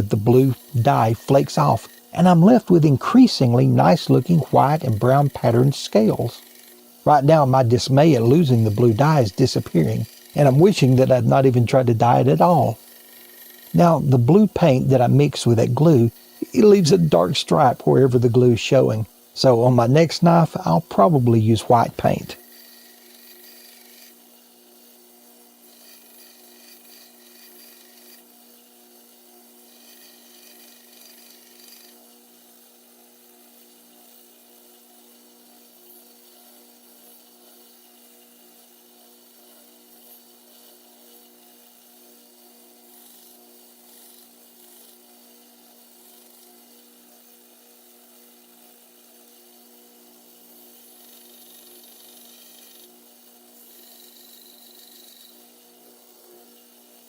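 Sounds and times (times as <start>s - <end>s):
sanding rasp: 0.0s - 17.2s, 22.1s - 32.6s, 33.6s - 46.8s, 50.3s - 56.1s
steady low hum: 0.0s - 23.3s
power sander humming and hissing: 8.1s - 11.1s.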